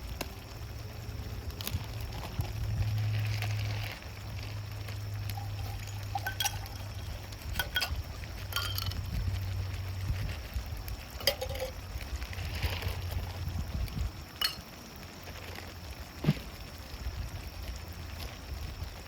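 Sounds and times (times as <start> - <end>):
steady low hum: 0.0 - 14.9
liquid being poured: 1.6 - 9.4, 10.1 - 15.8
light clinks: 5.3 - 9.2, 11.2 - 11.8, 14.4 - 14.8.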